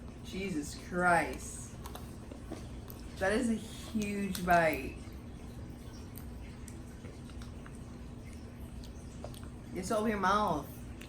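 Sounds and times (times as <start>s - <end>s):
low steady hum: 0.0s - 11.0s
person chewing: 5.2s - 9.7s.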